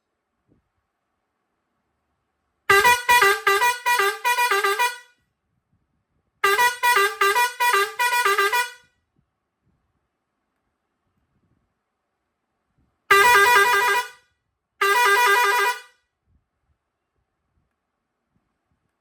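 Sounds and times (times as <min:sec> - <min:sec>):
air horn playing a tune: 0:02.7 - 0:05.1, 0:06.4 - 0:08.8, 0:13.1 - 0:14.2, 0:14.8 - 0:15.9.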